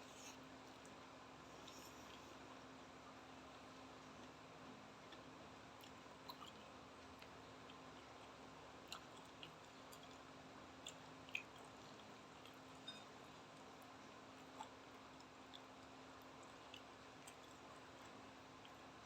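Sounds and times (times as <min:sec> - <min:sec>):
wet mouth clicks chewing: 0:05.1 - 0:13.7, 0:14.4 - 0:18.9.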